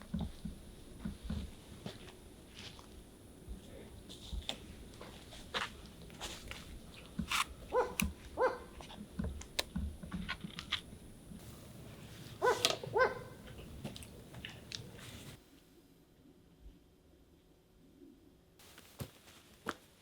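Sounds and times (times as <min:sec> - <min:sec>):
animal yelping: 0:07.7 - 0:08.7, 0:12.4 - 0:13.4.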